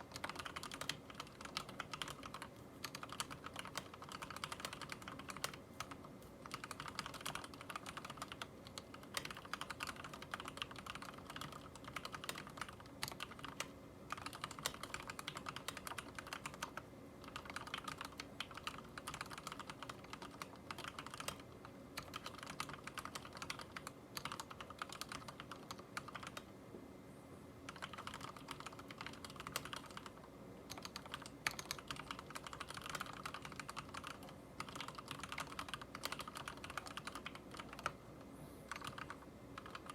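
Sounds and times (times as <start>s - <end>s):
mechanical keyboard typing: 0.0s - 26.5s, 27.7s - 38.0s, 38.7s - 39.9s.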